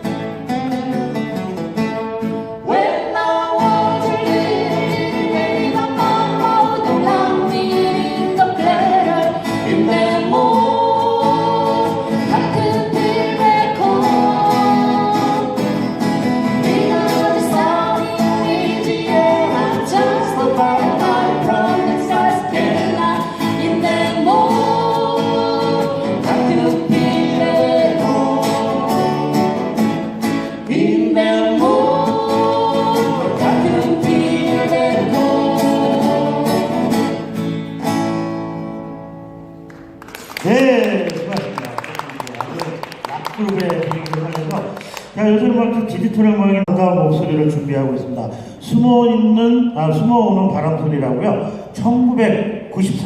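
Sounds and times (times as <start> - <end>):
acoustic guitar: 0.0 - 53.0
person singing folk song: 2.2 - 37.5.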